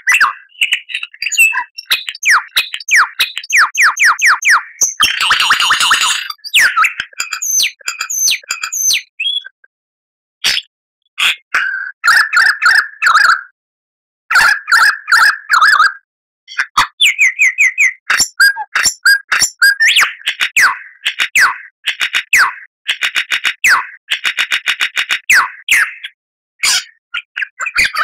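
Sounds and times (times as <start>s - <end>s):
lyrebird singing: 0.0s - 9.6s, 16.5s - 21.6s, 25.3s - 28.0s.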